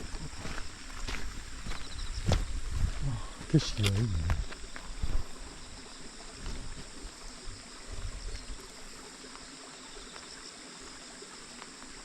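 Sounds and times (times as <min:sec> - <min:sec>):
soft footsteps: 0:00.0 - 0:08.2
insects trilling: 0:00.0 - 0:12.0.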